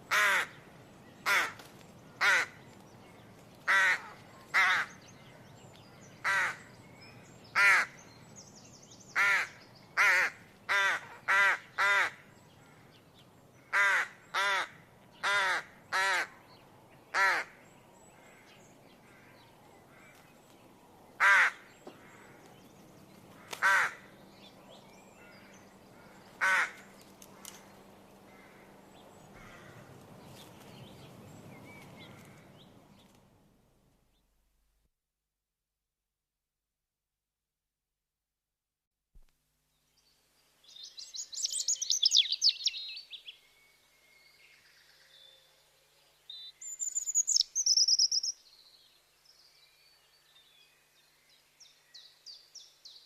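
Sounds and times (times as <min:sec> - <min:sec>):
crow cawing: 0:00.1 - 0:00.6, 0:01.2 - 0:01.6, 0:02.2 - 0:02.6, 0:03.7 - 0:05.0, 0:06.2 - 0:06.7, 0:07.6 - 0:08.0, 0:09.2 - 0:12.9, 0:13.6 - 0:16.3, 0:17.1 - 0:17.6, 0:18.2 - 0:20.2, 0:21.2 - 0:22.5, 0:23.4 - 0:24.1, 0:25.2 - 0:27.5, 0:28.3 - 0:28.8, 0:29.4 - 0:29.9.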